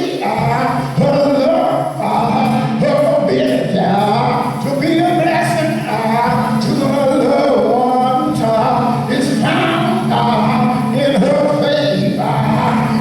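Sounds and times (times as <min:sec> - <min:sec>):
voices singing worship song: 0:00.0 - 0:13.0.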